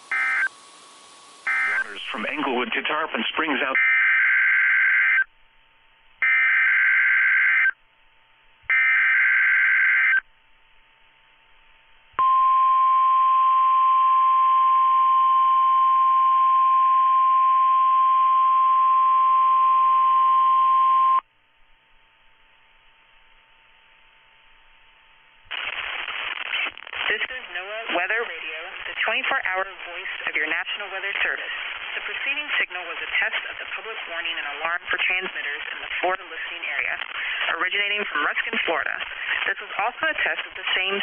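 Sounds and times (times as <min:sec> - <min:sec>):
steady warning alarm tone: 0:00.0 - 0:00.6, 0:01.4 - 0:02.2, 0:06.2 - 0:07.8, 0:08.7 - 0:10.2
faint radio hiss: 0:00.0 - 0:03.8, 0:21.5 - 0:41.0
electronic warbling data bursts: 0:01.4 - 0:02.6.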